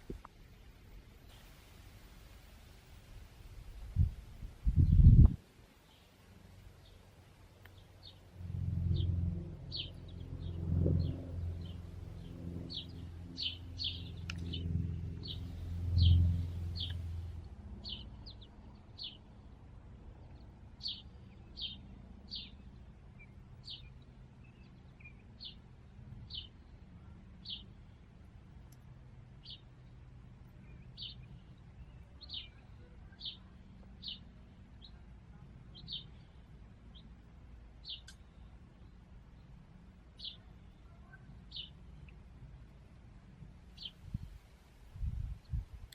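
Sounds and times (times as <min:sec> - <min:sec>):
songbird chip notes: 0:07.6 - 0:18.1
low rumble: 0:08.0 - 0:18.5.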